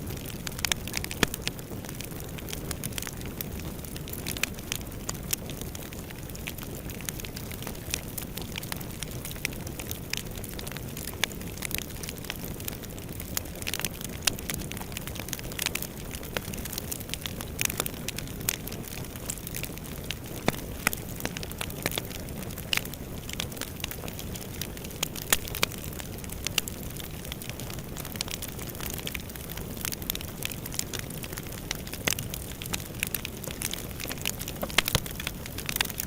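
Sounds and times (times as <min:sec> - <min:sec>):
fire crackling and popping: 0:00.0 - 0:36.0
low rumble of flames: 0:00.0 - 0:36.0.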